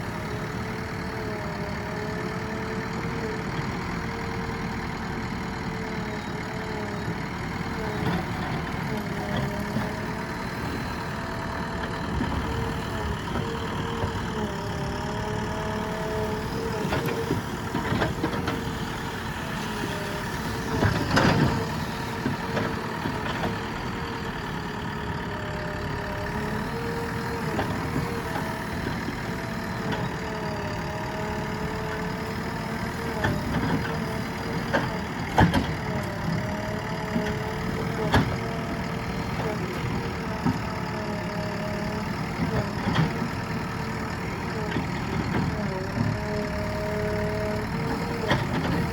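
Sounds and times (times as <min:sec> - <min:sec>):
diesel engine working: 0:00.0 - 0:48.9.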